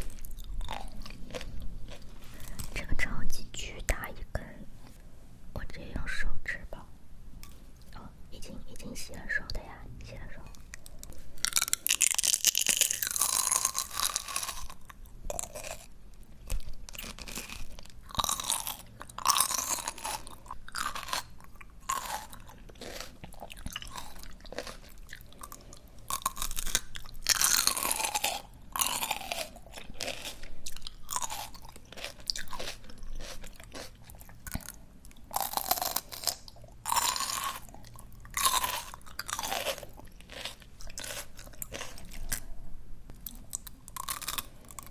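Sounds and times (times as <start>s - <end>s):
chewing crunchy greens: 0.0s - 2.8s, 10.4s - 42.5s, 43.1s - 44.9s.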